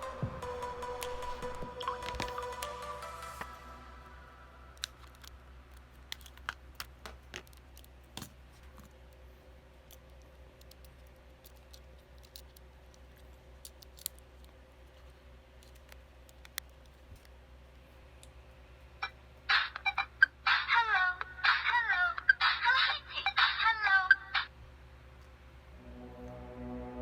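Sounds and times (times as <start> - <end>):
plastic parts being handled: 1.0 - 2.6, 4.7 - 17.5.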